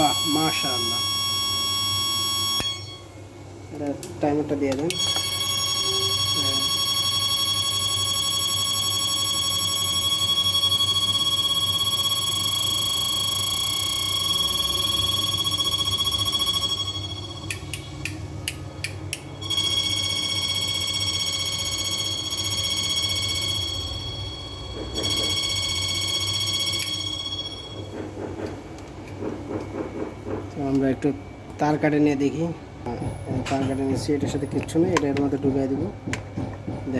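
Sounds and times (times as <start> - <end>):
high-pitched electronic whine: 0.0 - 3.2, 4.9 - 18.0, 18.7 - 28.0.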